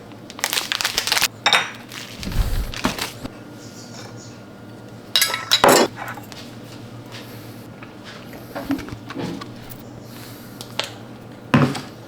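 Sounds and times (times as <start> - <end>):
dishes and cutlery clinking: 5.2 - 6.4.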